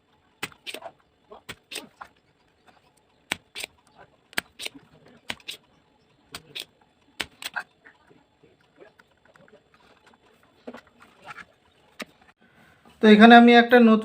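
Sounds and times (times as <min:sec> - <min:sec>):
hand tools clicking and tapping: 0:00.4 - 0:07.7.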